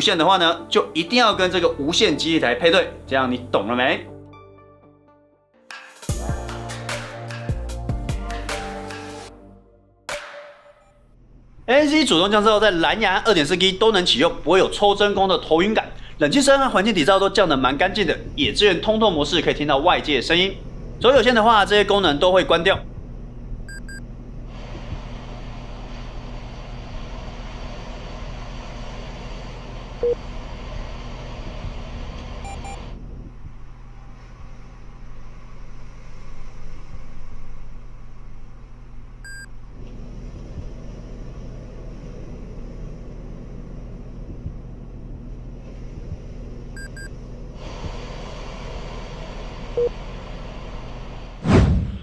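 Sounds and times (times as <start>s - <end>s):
low hum: 6.1s - 52.0s
road traffic rumble: 11.2s - 51.4s
steady ambient hiss: 11.6s - 24.5s.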